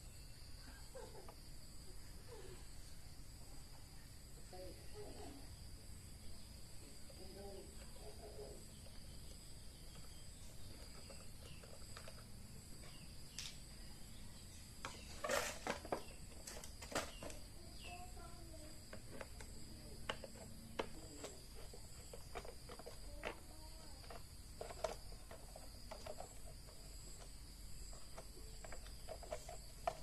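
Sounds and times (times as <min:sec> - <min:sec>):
short scraping rattle: 0:14.9 - 0:17.4.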